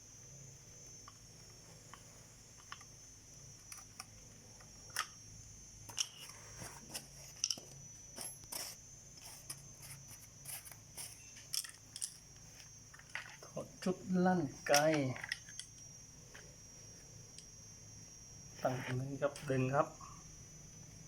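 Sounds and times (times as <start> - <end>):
faint steady high whine: 0.0 - 21.0
rifle parts clicking and knocking: 14.6 - 16.5.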